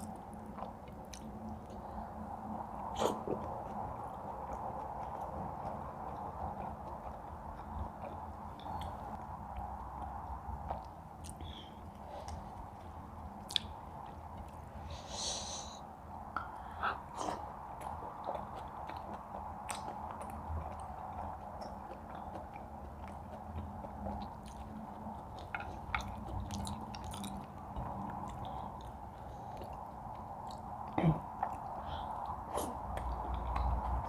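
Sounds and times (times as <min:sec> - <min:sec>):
people chewing food: 0:00.0 - 0:34.0
steady background hum: 0:00.0 - 0:34.0.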